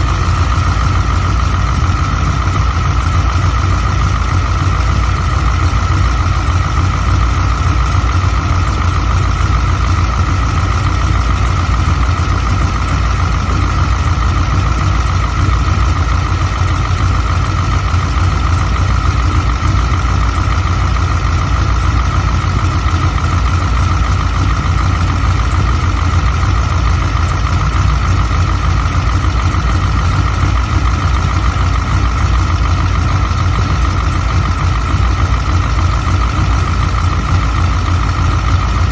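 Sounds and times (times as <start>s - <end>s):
engine idling: 0.0s - 38.9s.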